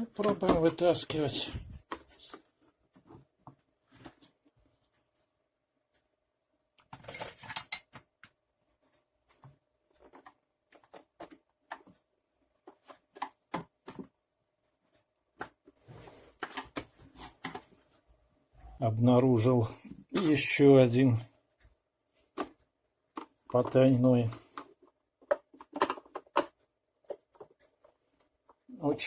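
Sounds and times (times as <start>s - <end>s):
plastic parts clicking and knocking: 6.8s - 14.3s, 14.9s - 18.0s, 21.6s - 29.0s.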